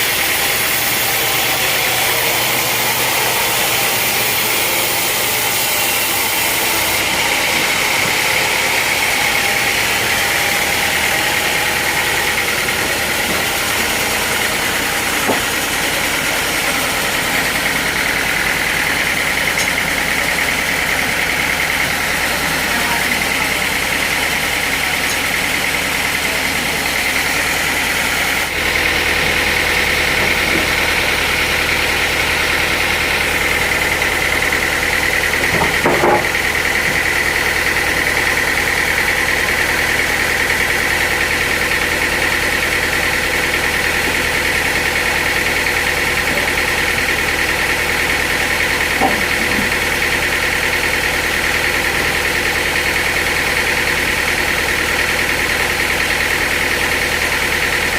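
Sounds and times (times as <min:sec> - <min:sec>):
low machinery hum: 0:00.0 - 0:53.0
sawmill saw whining: 0:00.0 - 0:57.9.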